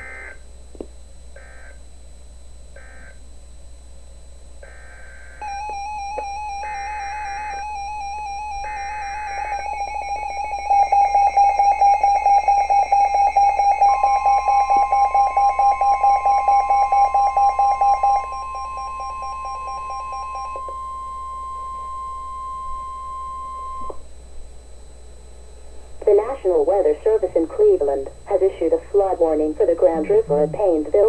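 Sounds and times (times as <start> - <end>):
rapid electronic beeping: 4.6 - 21.0
screeching data burst: 4.6 - 21.0
steady radio warning tone: 26.0 - 31.0.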